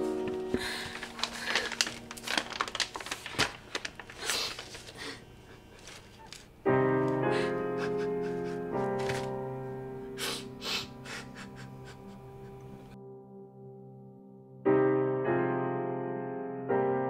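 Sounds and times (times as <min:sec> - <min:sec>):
soft piano music: 0:00.0 - 0:04.2, 0:06.2 - 0:17.0
rustling crinkling noises: 0:00.0 - 0:07.6, 0:08.3 - 0:09.6.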